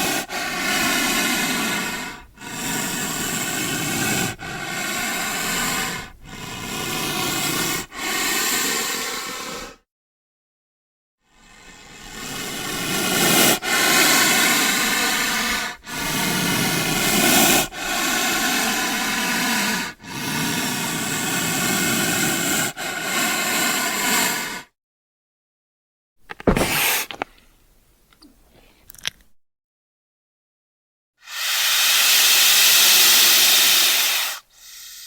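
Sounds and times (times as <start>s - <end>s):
snake hissing: 0.0s - 9.8s, 11.3s - 24.7s, 26.6s - 27.1s, 31.2s - 35.0s.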